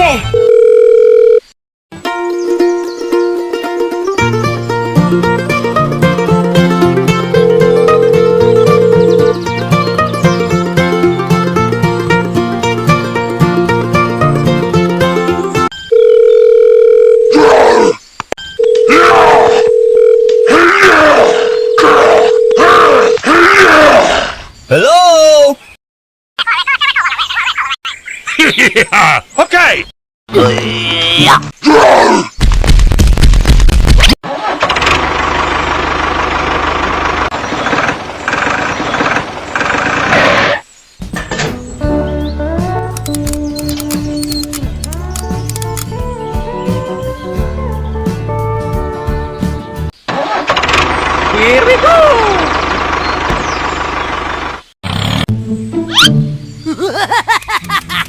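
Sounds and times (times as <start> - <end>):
dial-tone-like beep: 0.2 - 1.4, 7.4 - 9.3, 15.8 - 17.4, 21.5 - 22.7
plucked-string music: 2.0 - 15.7, 55.3 - 56.7.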